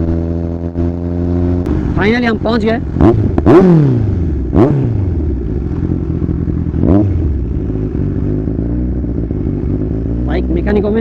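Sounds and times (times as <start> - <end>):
motorcycle engine idling and revving: 0.0 - 11.0.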